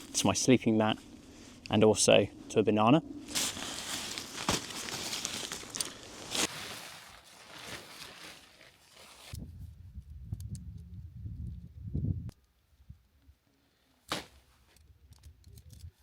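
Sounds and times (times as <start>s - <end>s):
tent fabric rustling: 3.2s - 9.4s
wind rumble on microphone: 9.3s - 13.1s.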